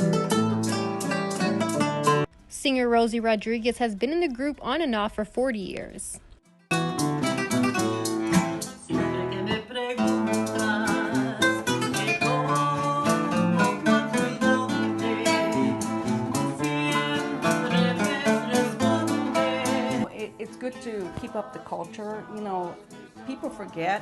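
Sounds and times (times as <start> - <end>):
percussion beat: 0.0 - 2.3, 6.7 - 24.0
string instruments strummed: 0.0 - 2.3, 6.7 - 24.0
person singing: 7.9 - 20.2, 20.8 - 24.0.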